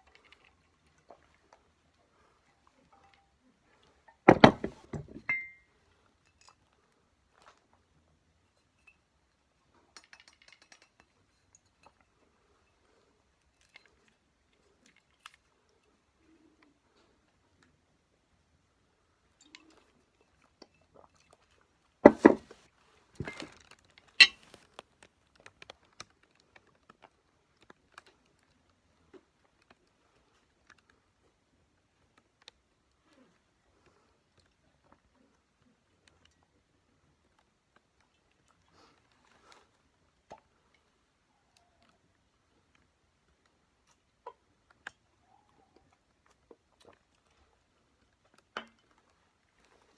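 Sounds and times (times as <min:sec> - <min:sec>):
loud knocks and clatters: 0:04.3 - 0:05.3, 0:22.1 - 0:22.5.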